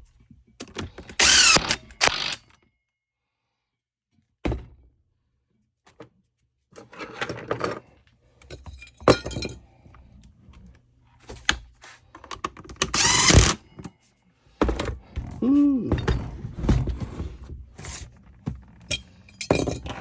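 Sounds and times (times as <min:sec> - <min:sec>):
metal tools clattering on workbench: 0:06.8 - 0:09.6, 0:18.8 - 0:20.0.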